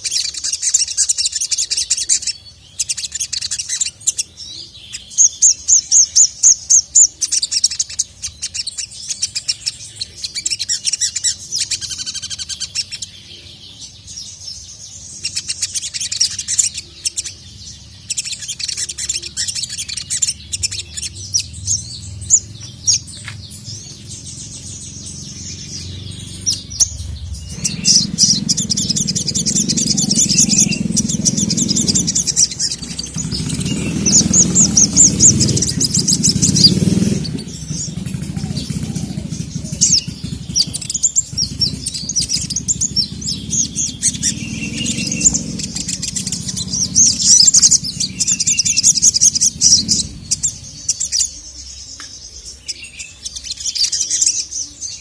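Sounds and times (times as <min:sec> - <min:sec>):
bird chirping and trilling: 0:00.0 - 0:55.0
low rumble: 0:20.2 - 0:51.1.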